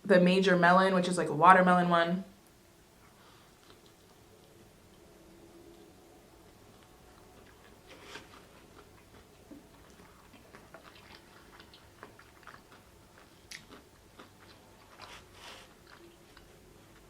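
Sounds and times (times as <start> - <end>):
mouth chewing food: 3.5 - 5.0, 5.7 - 17.0.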